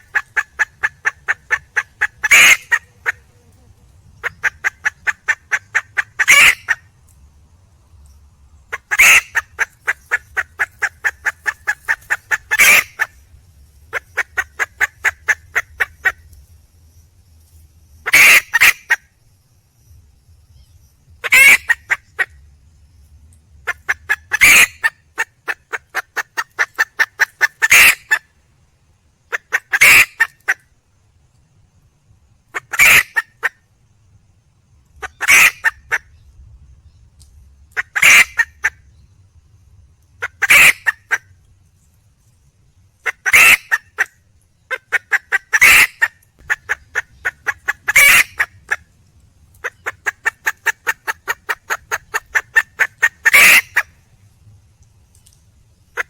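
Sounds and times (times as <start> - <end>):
hen clucking and cackling: 0.0 - 7.0, 8.6 - 13.2, 13.9 - 16.3, 18.0 - 19.0, 21.2 - 22.4, 23.6 - 28.3, 29.3 - 30.6, 32.5 - 33.6, 35.0 - 36.1, 37.7 - 38.8, 40.2 - 41.4, 43.0 - 48.9, 49.6 - 54.0.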